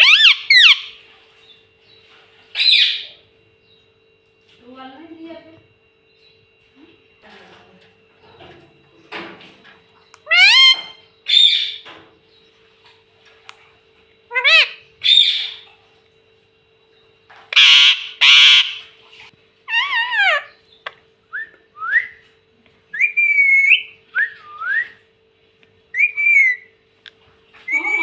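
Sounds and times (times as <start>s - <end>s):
parrot screeching: 0.0s - 0.9s, 10.2s - 11.8s, 14.3s - 15.6s, 17.5s - 18.9s, 19.7s - 20.6s, 23.0s - 23.9s, 26.0s - 26.7s, 27.7s - 28.0s
parrot whistled calls: 0.0s - 1.0s, 2.6s - 3.2s, 10.2s - 11.8s, 14.3s - 15.6s, 17.5s - 18.9s, 19.7s - 20.6s, 22.9s - 25.0s, 25.9s - 26.7s, 27.7s - 28.0s.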